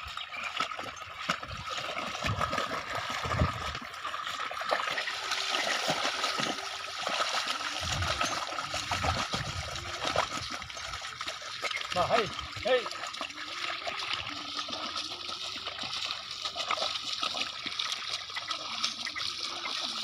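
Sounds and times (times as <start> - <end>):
water and mud splashing: 0.0 - 20.0.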